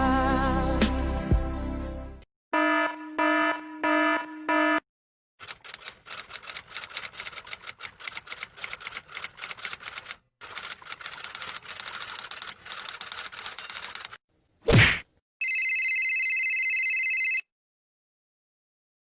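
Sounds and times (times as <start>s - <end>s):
keyboard typing clatter: 5.4s - 14.2s.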